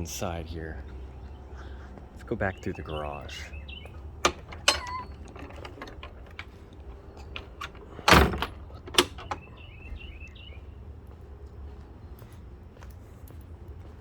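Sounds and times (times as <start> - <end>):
bird chirps: 0.8 - 4.0, 9.3 - 10.7
door clicks: 3.9 - 10.2.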